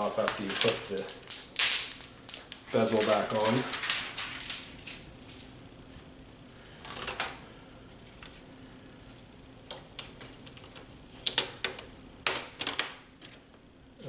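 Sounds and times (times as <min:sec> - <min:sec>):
plastic rustle: 0:02.7 - 0:05.5.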